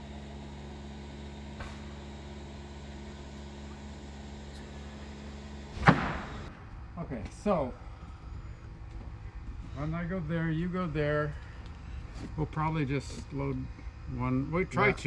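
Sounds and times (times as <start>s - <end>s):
low mechanical hum: 0.0s - 15.0s
sharp knock: 5.8s - 6.5s.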